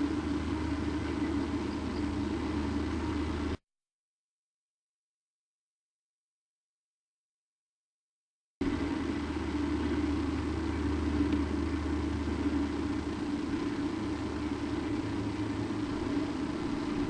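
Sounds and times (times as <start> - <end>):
constant hiss: 0.0 - 3.6, 8.6 - 17.0
low hum and rumble: 0.0 - 3.6, 8.6 - 17.0.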